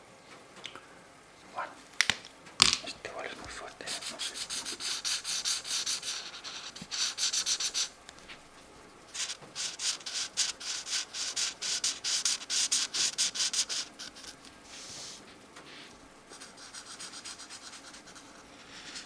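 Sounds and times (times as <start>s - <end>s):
marker scratching on paper: 2.8s - 8.5s, 9.1s - 19.0s.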